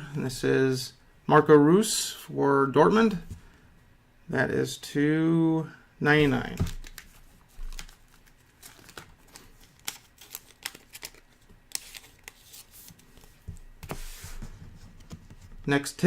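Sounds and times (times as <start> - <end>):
trading cards being flipped: 6.2 - 14.4.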